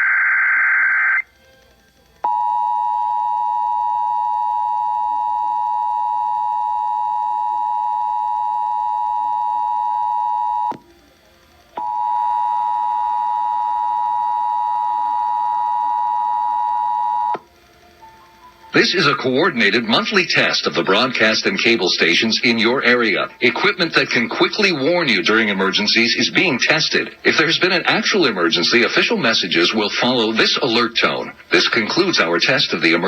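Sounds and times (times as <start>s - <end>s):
steady dual tone alert signal: 11.8s - 17.5s.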